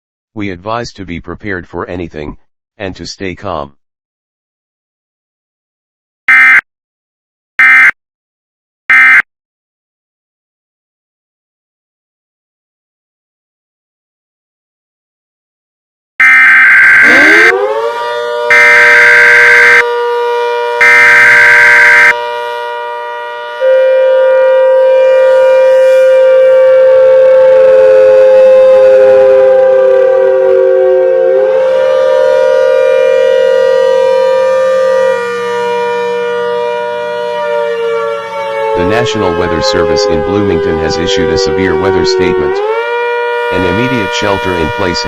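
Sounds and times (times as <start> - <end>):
screeching digital header tones: 6.3 - 6.6, 7.6 - 7.9, 8.9 - 9.2, 16.2 - 17.6, 18.5 - 19.8, 20.8 - 22.2
civil defense siren wailing: 16.2 - 45.0.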